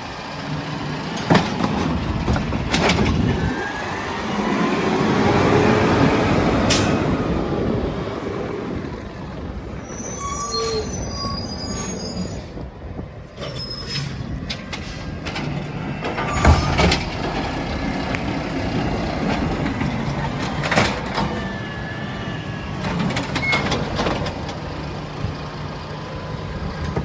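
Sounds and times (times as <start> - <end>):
garbage truck engine: 0.0 - 27.0
high metallic squeals: 9.6 - 12.6, 13.2 - 15.2, 16.0 - 17.1.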